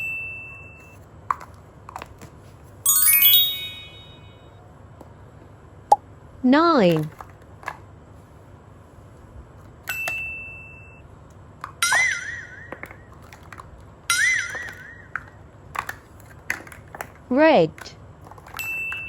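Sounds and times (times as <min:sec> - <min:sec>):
bright ding: 0:02.9 - 0:04.5.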